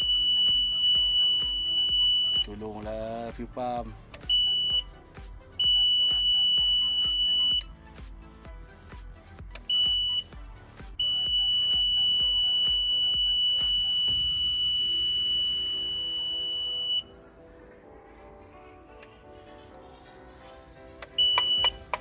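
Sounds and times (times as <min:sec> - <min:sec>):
low rapid thumping: 0:10.4 - 0:16.7.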